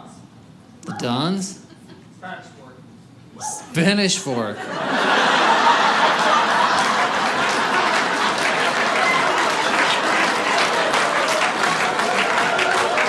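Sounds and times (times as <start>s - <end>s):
audience applauding: 5.0s - 13.0s.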